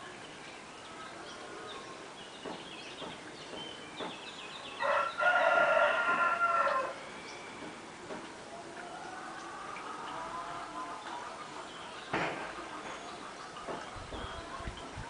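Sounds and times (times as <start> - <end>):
rooster crowing: 4.8 - 7.0.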